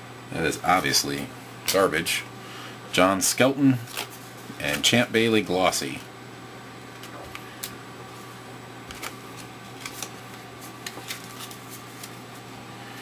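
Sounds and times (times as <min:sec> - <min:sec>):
steady low hum: 0:00.0 - 0:13.0
cards sliding and tapping: 0:08.9 - 0:12.2.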